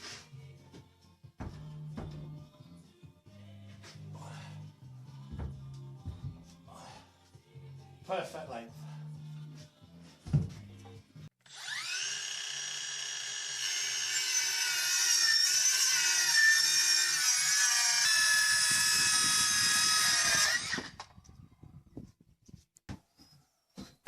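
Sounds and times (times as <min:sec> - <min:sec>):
electric drill whining: 0:11.4 - 0:21.1.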